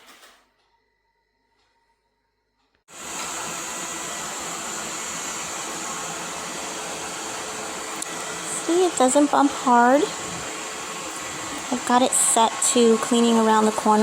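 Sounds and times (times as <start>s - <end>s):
robot vacuum whirring: 2.9s - 14.0s.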